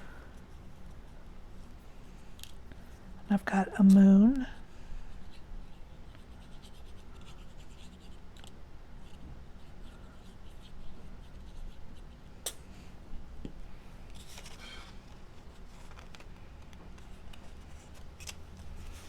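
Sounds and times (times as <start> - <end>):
paper scratching and rustling: 14.1 - 19.0.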